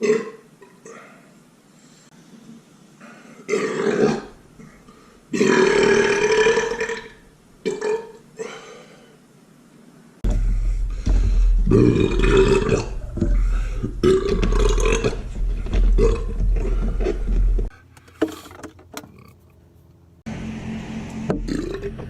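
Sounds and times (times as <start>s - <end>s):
man burping: 0.0s - 1.2s, 3.5s - 7.1s
steady low hum: 9.2s - 22.0s.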